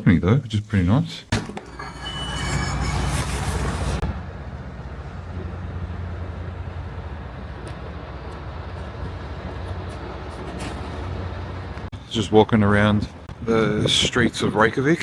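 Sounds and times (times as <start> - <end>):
city ambience rumble: 0.0 - 15.0.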